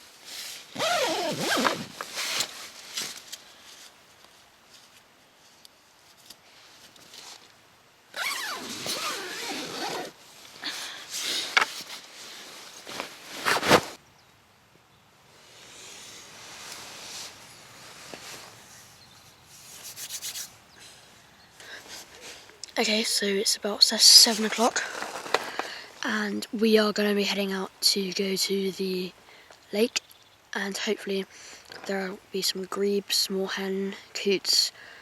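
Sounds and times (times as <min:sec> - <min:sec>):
fabric rustling: 0:00.0 - 0:04.0, 0:08.2 - 0:14.0, 0:15.7 - 0:19.0, 0:24.1 - 0:25.9
zips pulled: 0:00.4 - 0:03.1, 0:08.2 - 0:14.0.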